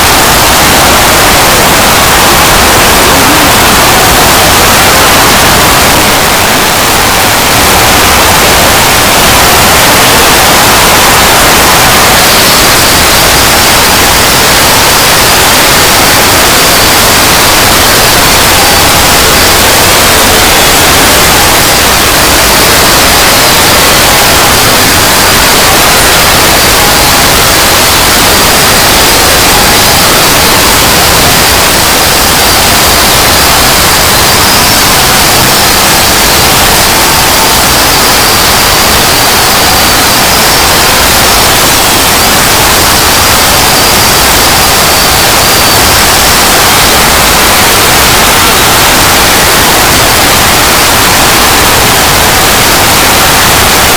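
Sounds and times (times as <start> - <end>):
faint high whine: 0.0 - 53.9
harsh static noise: 0.0 - 53.9.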